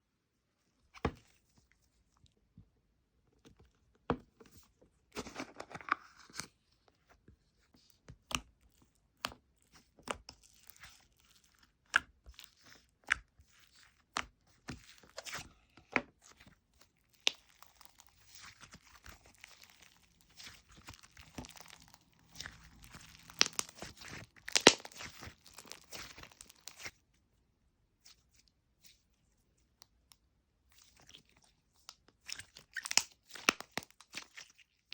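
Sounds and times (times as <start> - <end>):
slime crackling and rustling: 9.4 - 15.5, 16.1 - 27.1, 30.7 - 34.9.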